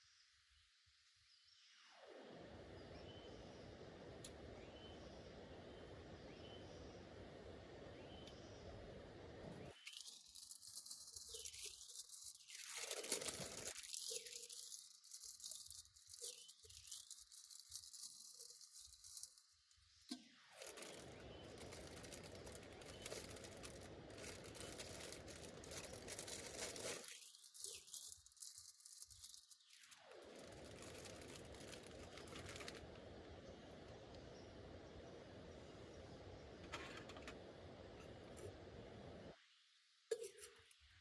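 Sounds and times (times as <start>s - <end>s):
rain pattering: 20.6s - 33.0s.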